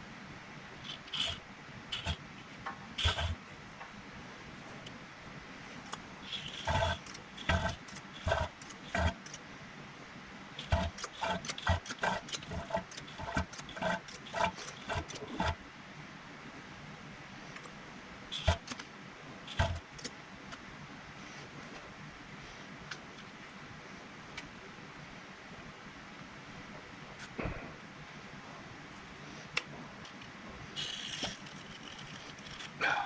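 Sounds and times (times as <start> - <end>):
hand pump strokes: 0.8 - 2.2, 3.0 - 3.4, 6.2 - 9.4, 10.6 - 15.6, 18.3 - 18.8, 19.5 - 20.1, 30.8 - 32.8.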